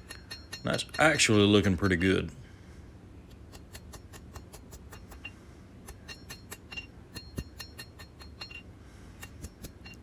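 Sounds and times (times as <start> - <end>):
hammer tapping on steel: 0.0 - 1.1, 5.9 - 8.6.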